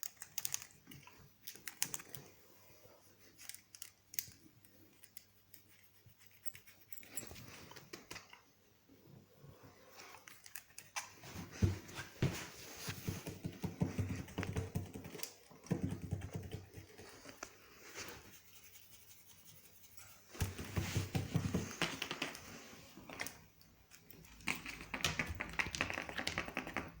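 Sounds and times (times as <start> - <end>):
clicking scratch strokes on fur: 12.4 - 21.8.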